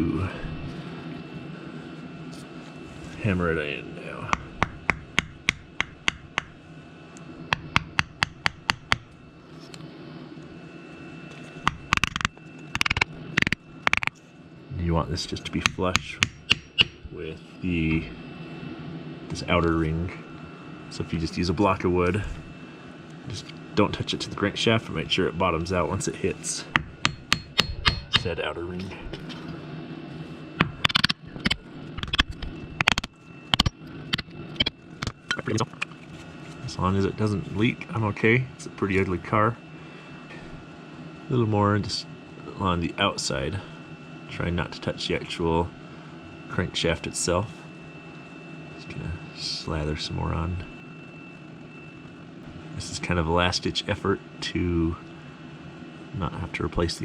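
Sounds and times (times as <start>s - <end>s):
light hammer taps: 4.3s - 6.5s.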